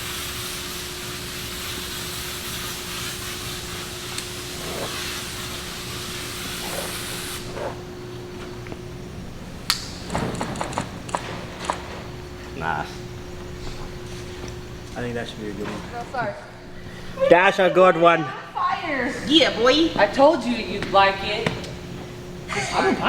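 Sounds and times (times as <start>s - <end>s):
steady spraying hiss: 0.0s - 8.3s
sharp click: 9.7s - 11.8s.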